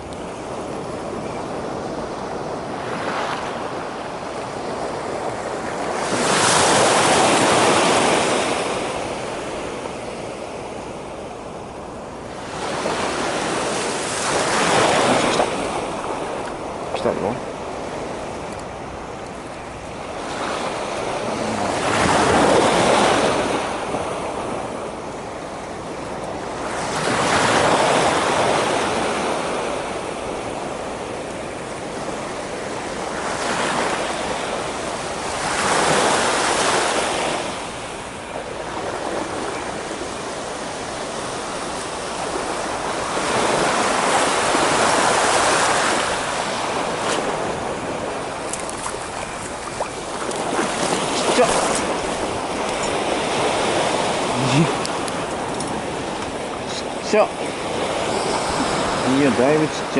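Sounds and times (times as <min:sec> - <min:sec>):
waves breaking on shore: 0:00.0 - 0:59.9
wind on microphone: 0:00.0 - 0:59.9.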